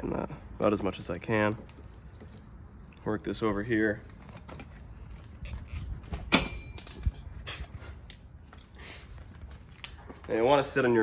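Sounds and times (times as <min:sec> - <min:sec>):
sharp metallic clink: 0:05.7 - 0:07.2.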